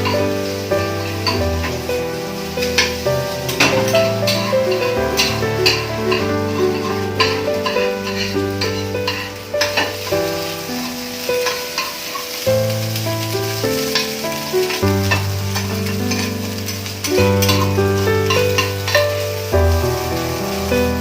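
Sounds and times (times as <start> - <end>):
background music with held notes: 0.0 - 21.0
eggs sizzling in a pan: 0.0 - 21.0
spatula scraping and tapping pan: 1.0 - 1.9, 2.6 - 12.4, 13.8 - 19.2.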